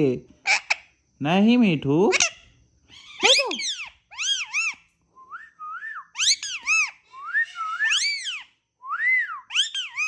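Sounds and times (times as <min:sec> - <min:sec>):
parrot whistling calls: 0:03.0 - 0:04.8, 0:05.7 - 0:10.0.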